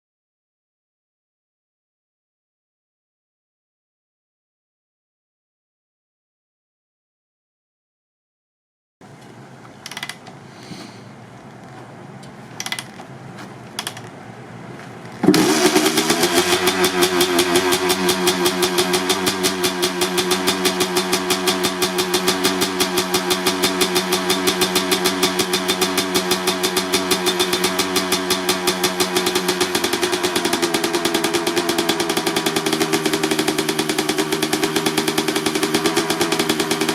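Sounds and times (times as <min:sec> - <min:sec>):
two-stroke engine running: 0:15.2 - 0:36.9.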